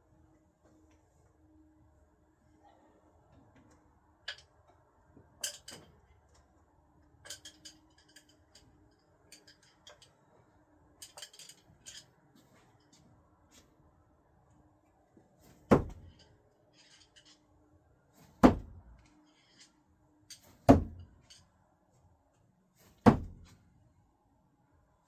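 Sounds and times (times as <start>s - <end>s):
screwdrivers clinking: 7.2s - 10.2s, 11.0s - 12.1s.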